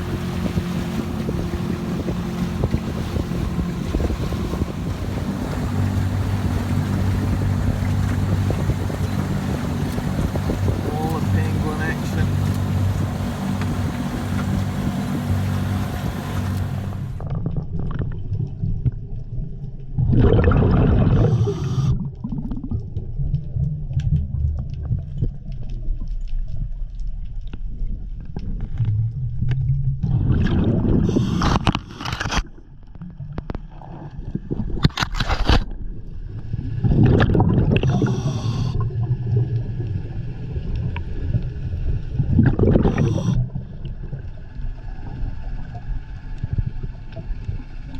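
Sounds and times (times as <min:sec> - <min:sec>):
steady low hum: 0:00.0 - 0:17.2, 0:36.0 - 0:47.9
water gurgling and bubbling: 0:00.0 - 0:26.5, 0:27.8 - 0:47.9.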